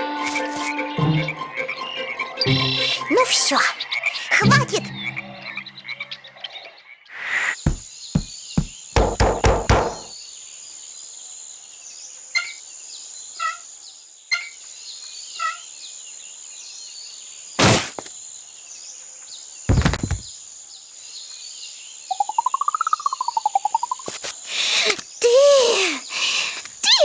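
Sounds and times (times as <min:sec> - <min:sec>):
forest background hiss: 0:00.0 - 0:27.0
bird-like chirps: 0:00.2 - 0:09.0, 0:21.2 - 0:27.0
cartoon knocking: 0:04.4 - 0:06.0, 0:07.7 - 0:10.1
heavy thud: 0:07.7 - 0:10.1.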